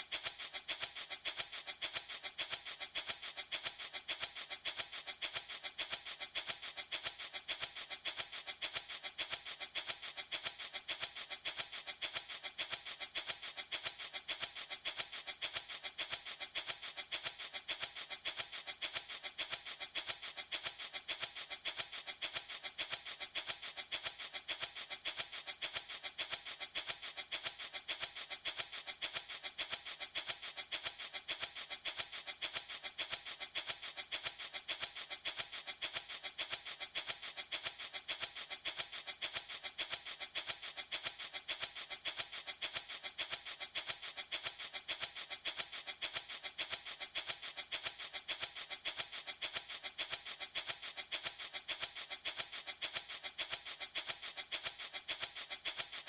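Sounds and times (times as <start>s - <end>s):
baby rattle shaken: 0.0s - 56.0s.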